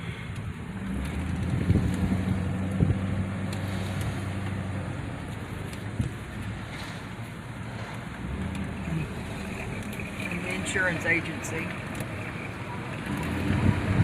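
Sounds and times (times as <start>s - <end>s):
road noise: 0.0s - 14.0s
car engine running: 0.5s - 14.0s.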